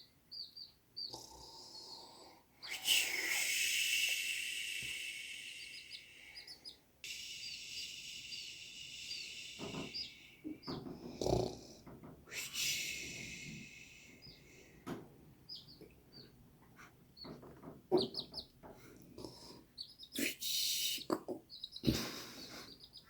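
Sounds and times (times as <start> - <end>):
chicks peeping faintly: 0.0 - 23.0
steady high hiss: 2.6 - 6.4, 7.0 - 10.6, 12.2 - 14.6.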